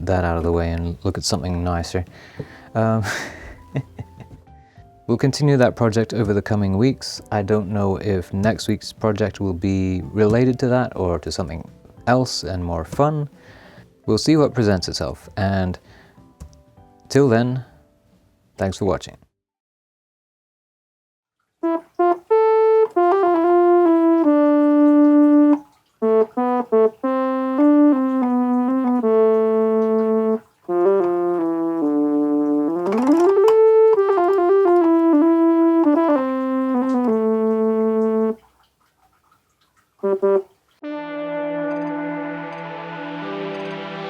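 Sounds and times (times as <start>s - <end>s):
electronic keyboard melody: 21.6s - 38.4s, 40.0s - 44.0s.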